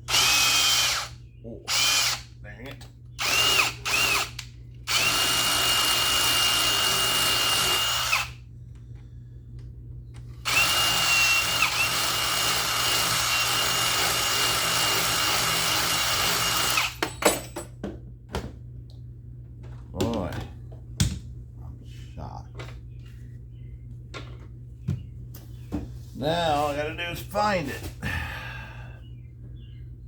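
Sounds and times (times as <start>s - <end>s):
electric drill whining: 0.1s - 2.3s, 3.2s - 8.4s, 10.4s - 17.0s.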